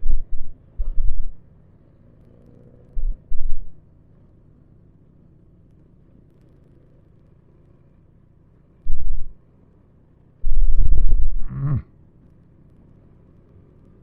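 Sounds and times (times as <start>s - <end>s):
wind buffeting on microphone: 0.0s - 1.4s, 10.4s - 11.5s
motorcycle rumble: 0.0s - 14.0s.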